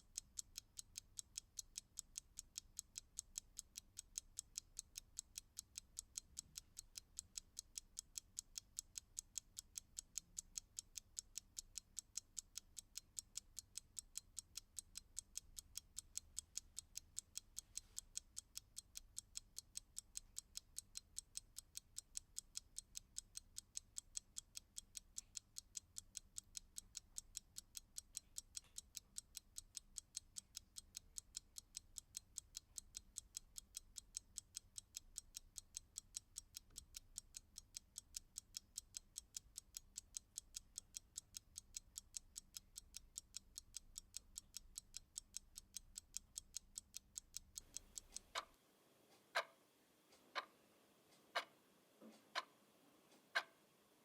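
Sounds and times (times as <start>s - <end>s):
mechanical clock ticking: 0.0s - 53.7s.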